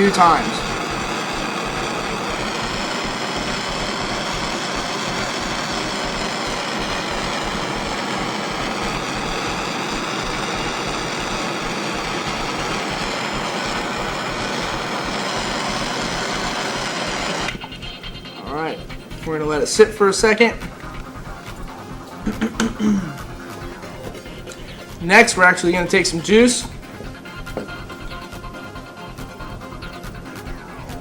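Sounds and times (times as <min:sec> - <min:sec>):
torch flame hissing: 0:00.0 - 0:17.6.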